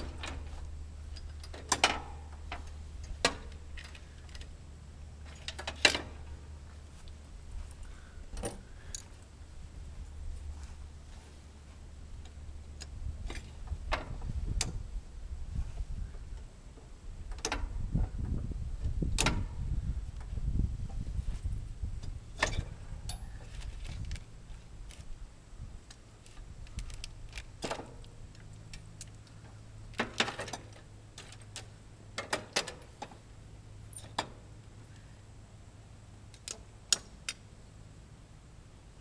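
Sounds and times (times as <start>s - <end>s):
metallic clicks of tools: 36.3s - 37.4s.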